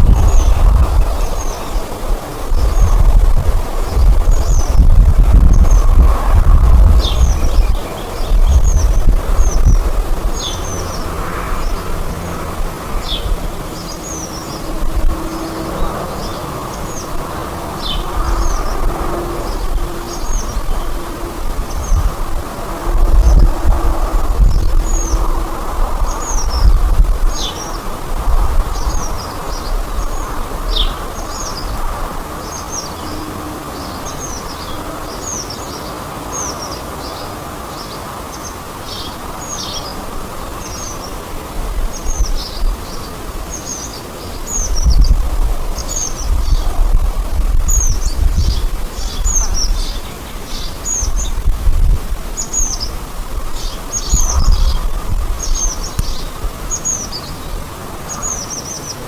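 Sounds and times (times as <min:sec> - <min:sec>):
low rumble: 0:00.0 - 0:32.0
songbird calling: 0:00.0 - 0:59.0
steady hiss: 0:00.0 - 0:59.0.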